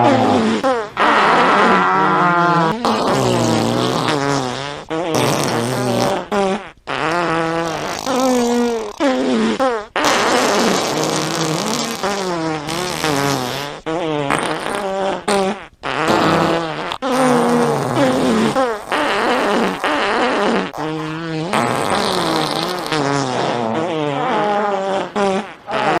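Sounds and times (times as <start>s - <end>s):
warbling fart sound effects: 0.0s - 26.0s.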